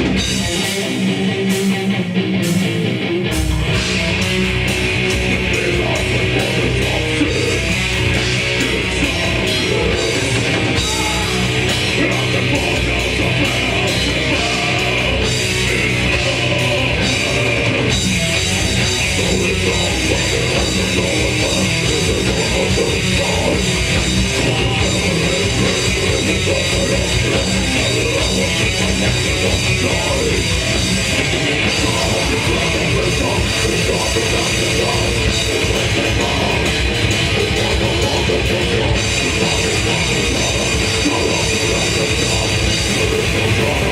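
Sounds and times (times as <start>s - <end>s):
bass: 0.0s - 43.9s
distorted guitars: 0.0s - 43.9s
pounding drum kit: 0.0s - 43.9s.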